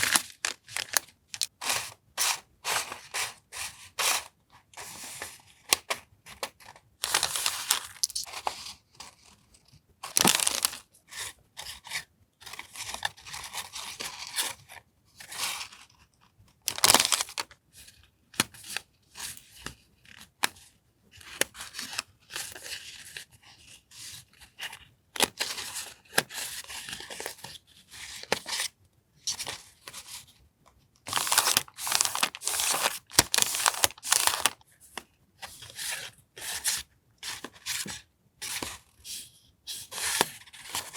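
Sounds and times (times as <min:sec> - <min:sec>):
paper rustling and crinkling: 0:00.0 - 0:09.3, 0:10.0 - 0:10.8, 0:16.7 - 0:17.5, 0:31.1 - 0:34.6.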